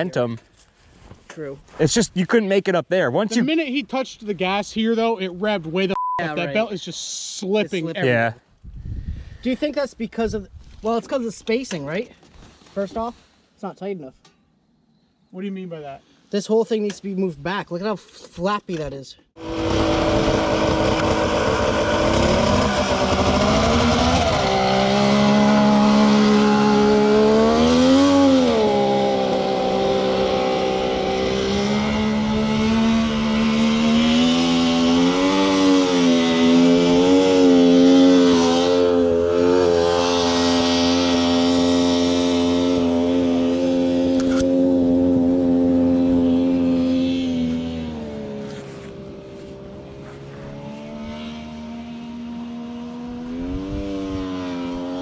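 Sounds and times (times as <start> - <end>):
two-stroke engine running: 19.4 - 55.0.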